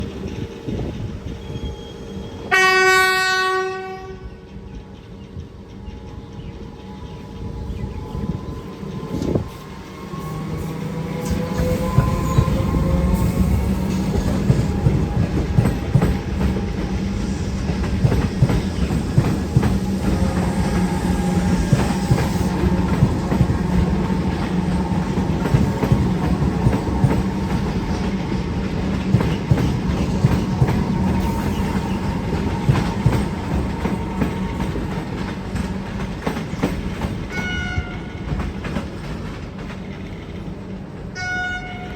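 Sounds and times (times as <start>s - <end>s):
train rumble: 0.0s - 41.9s
train horn blast: 2.5s - 4.4s, 37.3s - 38.3s, 41.2s - 41.9s
train wheels clacking over rail joints: 11.2s - 41.0s.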